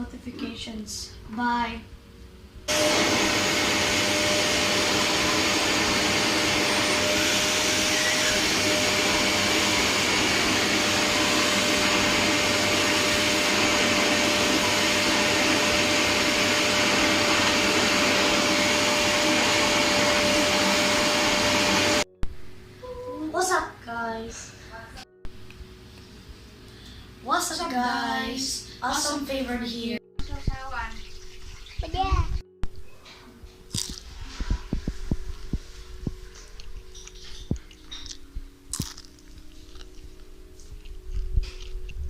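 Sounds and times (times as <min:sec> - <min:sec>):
vacuum cleaner whining: 0:02.7 - 0:22.1.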